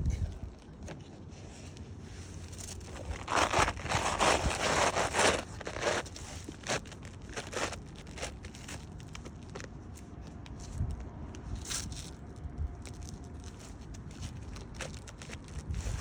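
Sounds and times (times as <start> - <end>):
scraping on roof shingles: 2.8 - 8.8.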